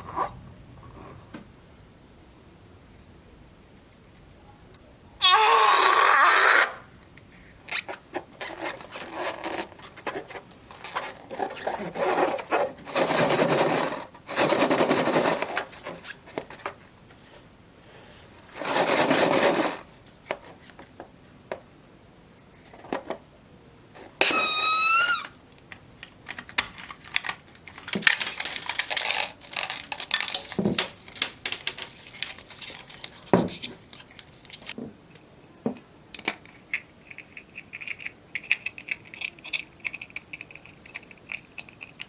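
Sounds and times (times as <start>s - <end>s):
balloon neck squealing: 5.2s - 6.8s, 24.2s - 25.4s.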